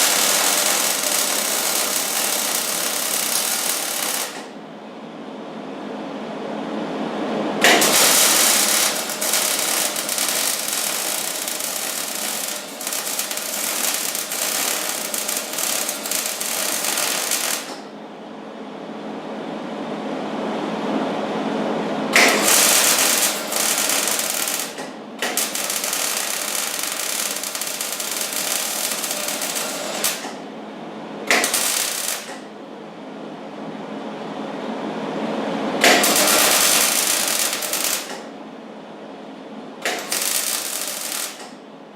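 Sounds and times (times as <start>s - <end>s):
welding arc crackling: 0.0s - 4.6s, 7.6s - 17.9s, 22.2s - 30.4s, 31.3s - 32.5s, 35.8s - 38.3s, 39.8s - 41.6s
arc striking crack: 22.2s - 30.4s, 35.8s - 38.3s.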